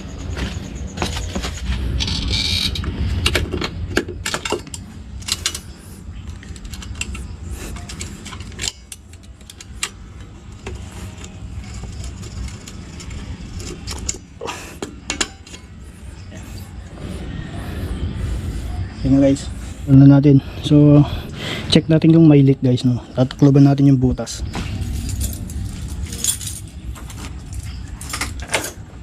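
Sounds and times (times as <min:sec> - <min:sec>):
metallic clinks of springs: 0:14.8 - 0:15.8.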